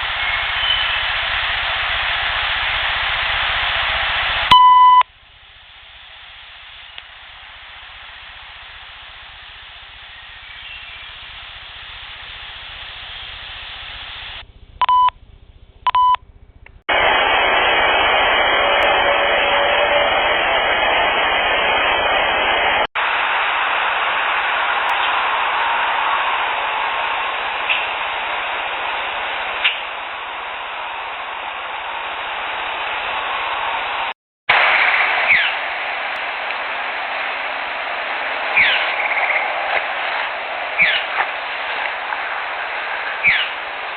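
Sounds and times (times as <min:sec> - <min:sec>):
steady hiss: 0:00.0 - 0:43.9
short high beeps: 0:04.5 - 0:05.0, 0:14.8 - 0:15.1, 0:15.9 - 0:16.2.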